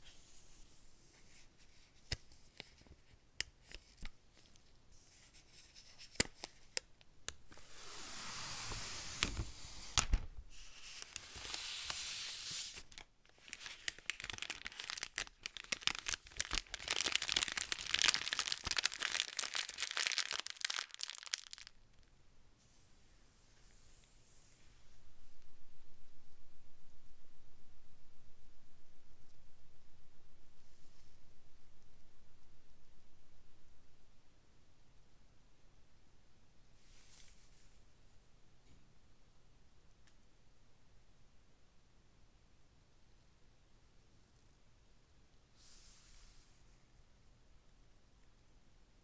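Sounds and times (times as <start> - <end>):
packaging tearing and crinkling: 11.0 - 21.8.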